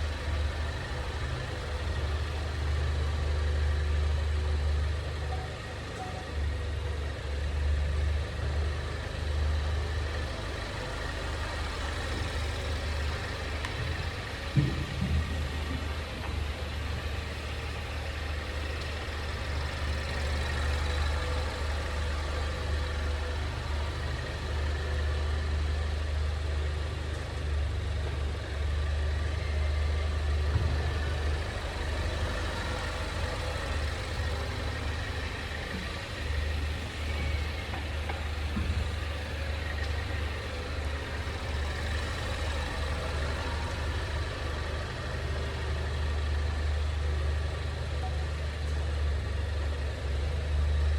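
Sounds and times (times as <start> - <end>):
low car cabin drone: 8.2 - 48.2.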